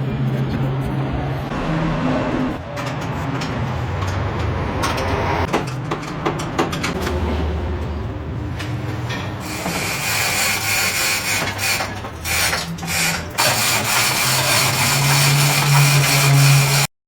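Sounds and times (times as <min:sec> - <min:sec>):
power tool grinding metal: 0:09.4 - 0:16.9.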